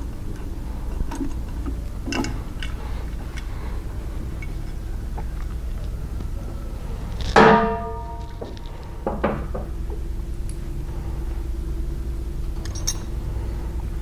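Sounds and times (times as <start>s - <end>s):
low steady hum: 0.0s - 14.0s
metal clanking and ringing: 7.4s - 8.6s, 12.6s - 13.2s.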